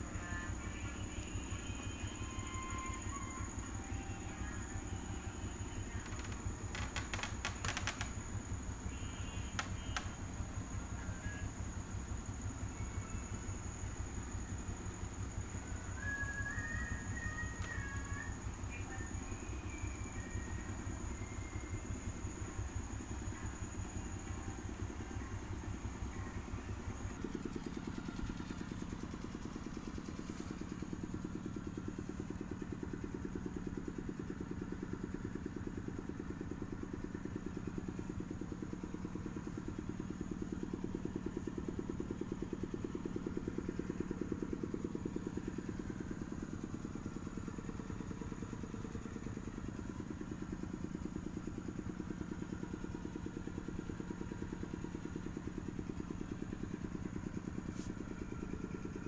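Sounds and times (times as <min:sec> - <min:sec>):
engine idling with fast clatter: 0:00.0 - 0:59.0.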